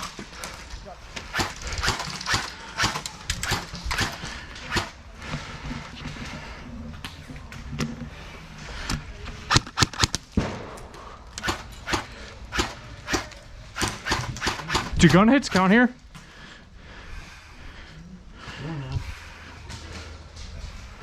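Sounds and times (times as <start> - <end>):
airsoft guns firing: 1.2 - 5.0, 9.5 - 15.7.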